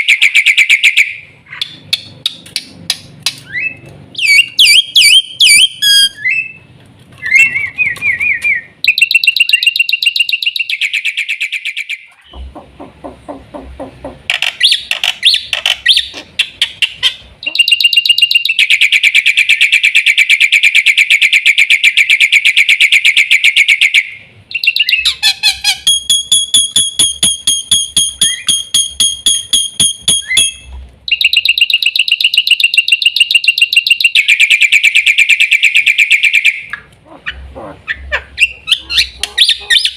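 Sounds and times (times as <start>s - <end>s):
lower-pitched bird notes: 24.5s - 36.9s.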